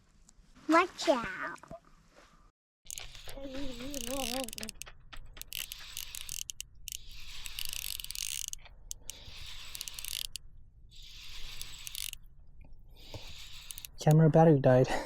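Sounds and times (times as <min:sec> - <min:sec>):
fishing reel whirring and clicking: 0:02.9 - 0:12.3, 0:13.0 - 0:14.2.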